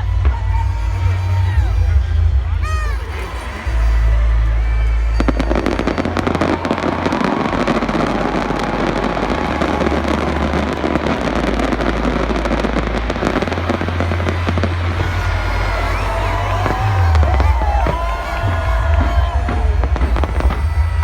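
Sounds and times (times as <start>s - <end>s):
heavy low rumble: 0.0s - 21.0s
fireworks crackling: 5.2s - 21.0s.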